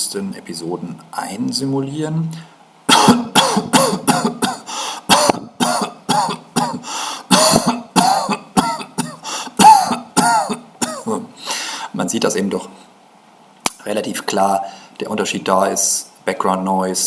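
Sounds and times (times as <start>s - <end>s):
man coughing: 2.9s - 11.4s.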